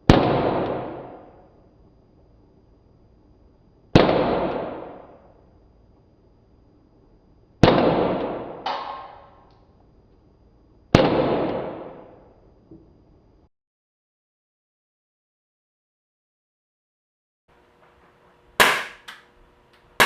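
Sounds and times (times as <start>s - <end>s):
smaller crack: 17.7s - 20.0s
air pistol shots cracking: 17.9s - 20.0s.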